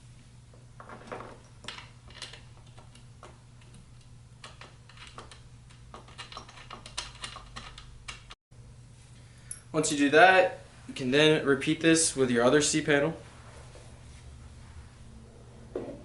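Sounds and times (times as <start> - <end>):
allen key turning bolts: 0.9 - 8.4.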